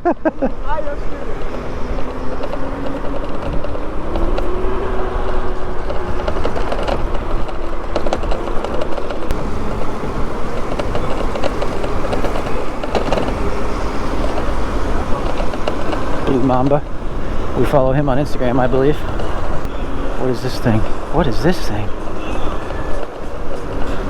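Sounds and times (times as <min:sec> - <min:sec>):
low rumble of street traffic: 0:00.0 - 0:24.0
clicks and rattles: 0:05.2 - 0:19.7.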